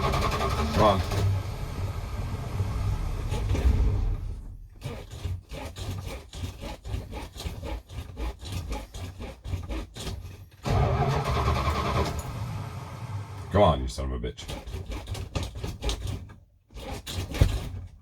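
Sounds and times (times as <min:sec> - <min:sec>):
truck engine cranking: 0:00.0 - 0:05.5, 0:10.5 - 0:16.2.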